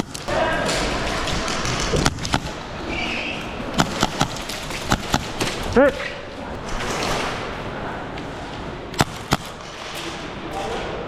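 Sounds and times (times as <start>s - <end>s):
steady rustling: 0.0s - 11.0s
airsoft gunshots: 3.7s - 5.8s, 8.9s - 10.0s.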